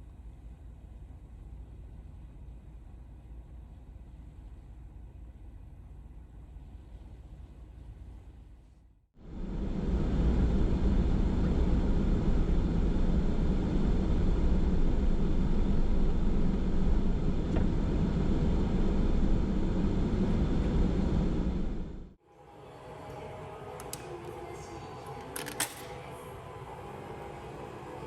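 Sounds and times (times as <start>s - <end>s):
mechanical drone with low hum: 9.2s - 28.0s.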